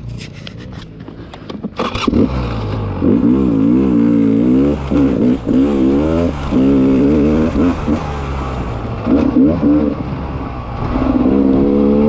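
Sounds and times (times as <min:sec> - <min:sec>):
clicks and scrapes: 0:00.0 - 0:02.8
dirt bike engine revving: 0:01.8 - 0:12.0.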